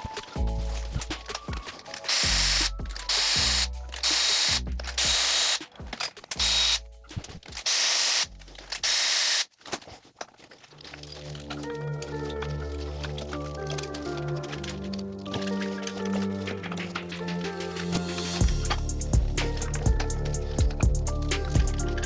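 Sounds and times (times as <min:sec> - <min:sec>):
cordless power ratchet spinning: 0:02.1 - 0:05.6, 0:06.4 - 0:06.8, 0:07.5 - 0:09.5, 0:17.8 - 0:22.0.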